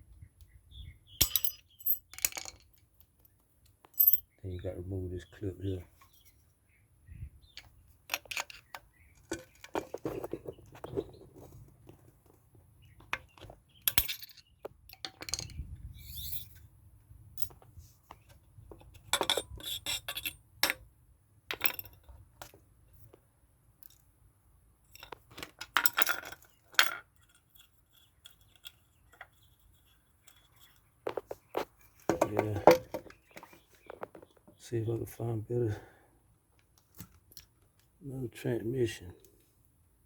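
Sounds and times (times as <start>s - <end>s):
metal tools clinking and scraping: 1.2s - 2.8s, 3.8s - 4.4s, 7.6s - 11.5s, 13.4s - 16.6s, 18.8s - 20.8s, 24.9s - 34.6s.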